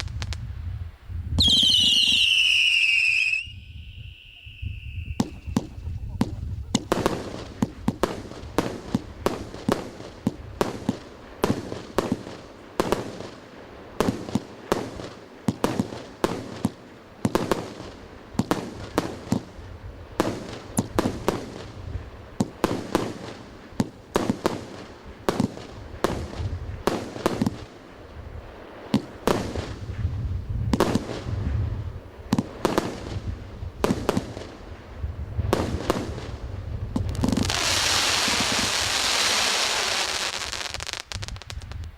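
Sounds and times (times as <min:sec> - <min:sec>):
fireworks bangs: 0:00.0 - 0:00.5, 0:01.4 - 0:13.4, 0:32.2 - 0:41.9
fireworks crackle: 0:00.0 - 0:00.5, 0:01.4 - 0:17.9, 0:32.3 - 0:41.9.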